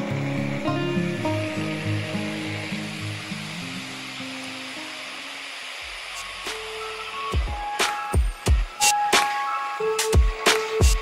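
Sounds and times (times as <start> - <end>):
background music of held notes: 0.0 - 2.6.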